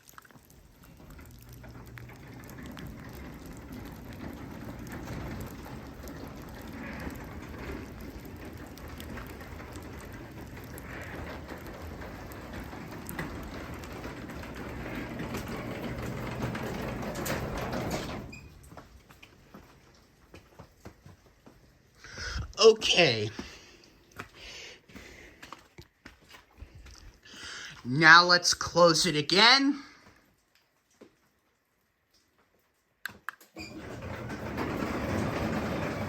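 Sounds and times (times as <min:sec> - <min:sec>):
garage door opener running: 0:00.5 - 0:18.7, 0:33.6 - 0:36.0.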